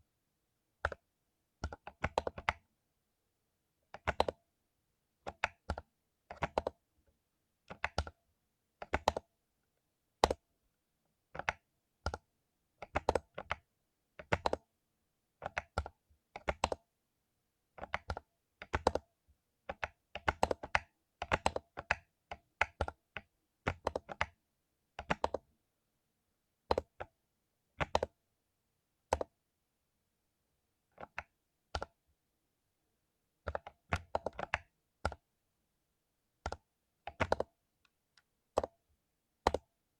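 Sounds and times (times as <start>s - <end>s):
mechanical keyboard typing: 1.6s - 2.6s, 3.9s - 4.4s, 5.2s - 6.8s, 7.7s - 8.2s, 8.8s - 9.3s, 10.2s - 10.4s, 11.4s - 14.6s, 15.4s - 16.8s, 17.8s - 19.0s, 19.7s - 24.4s, 25.0s - 25.5s, 26.7s - 27.1s, 27.8s - 28.2s, 29.1s - 29.4s, 33.4s - 35.3s, 36.4s - 37.6s, 38.5s - 38.8s, 39.4s - 39.7s.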